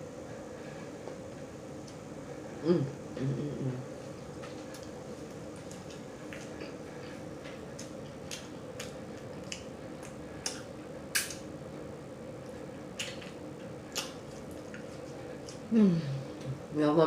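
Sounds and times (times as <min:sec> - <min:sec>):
low hum: 0:00.0 - 0:17.0
person chewing food: 0:04.1 - 0:11.5, 0:12.4 - 0:15.7.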